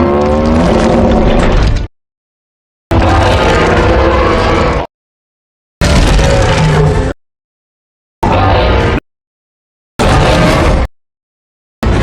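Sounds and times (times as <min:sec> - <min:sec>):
robot dinosaur sound effect: 0:08.2 - 0:09.0.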